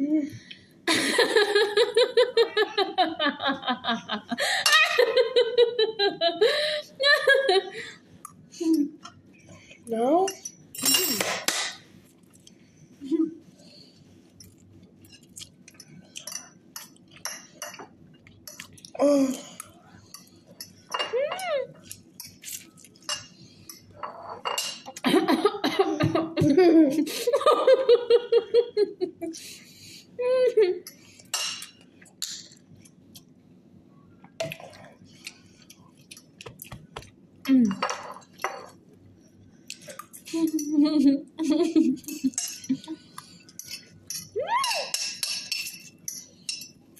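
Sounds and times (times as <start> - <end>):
cutlery clinking on plates: 10.3 - 11.8, 22.2 - 24.9, 37.7 - 38.8, 42.0 - 42.8, 43.4 - 46.8.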